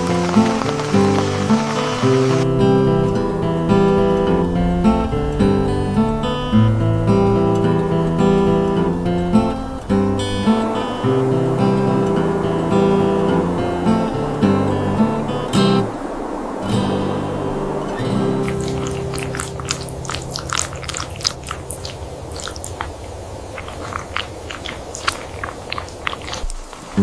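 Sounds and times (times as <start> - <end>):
acoustic guitar strumming chords: 0.0 - 20.4
crunchy chewing: 18.2 - 27.0.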